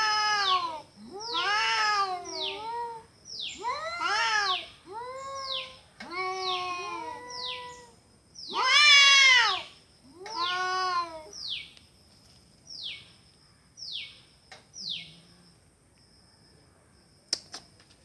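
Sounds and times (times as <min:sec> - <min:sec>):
cats yowling: 0:00.0 - 0:07.9, 0:08.5 - 0:11.4.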